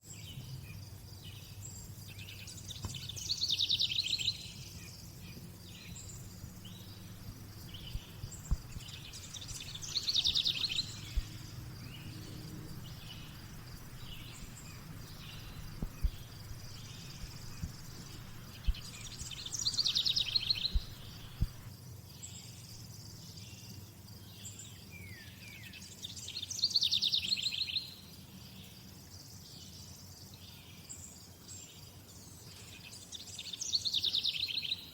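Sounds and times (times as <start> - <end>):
soft bird chirps: 0.0 - 23.8
high insect hiss: 0.1 - 34.9
bird trilled song: 1.3 - 21.7.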